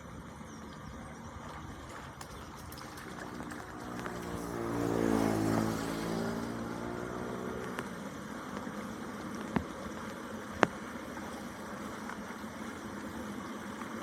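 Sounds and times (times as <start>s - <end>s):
vehicle driving past: 0.8s - 9.4s.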